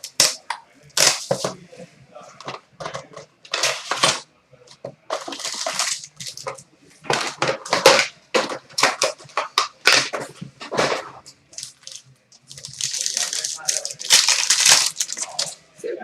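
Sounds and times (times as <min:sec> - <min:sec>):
card packs being torn open: 0:00.0 - 0:01.6, 0:05.1 - 0:15.6
wrappers crackling and crinkling: 0:00.0 - 0:01.7, 0:02.4 - 0:15.8.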